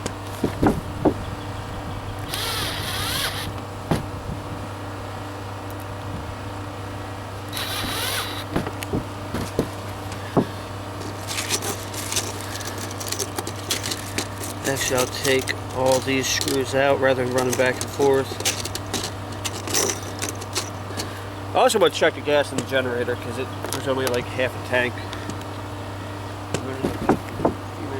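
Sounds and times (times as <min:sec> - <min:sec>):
steady low hum: 0:00.0 - 0:27.9
power drill whirring: 0:02.2 - 0:03.6, 0:07.5 - 0:08.6
handling clicks and knocks: 0:07.6 - 0:21.2, 0:26.5 - 0:27.6.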